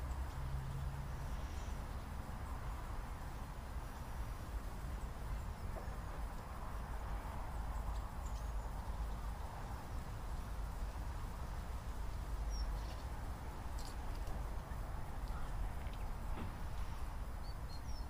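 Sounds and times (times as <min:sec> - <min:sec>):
faint bird chirps: 0:17.4 - 0:18.0.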